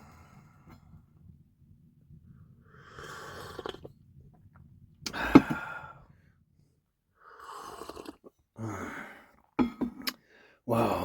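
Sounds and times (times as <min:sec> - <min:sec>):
person slurping coffee: 0:02.9 - 0:04.0, 0:07.3 - 0:08.4.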